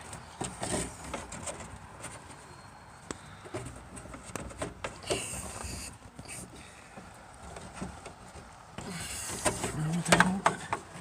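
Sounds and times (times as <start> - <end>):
scraping rustle: 0.0 - 2.6, 3.4 - 11.0.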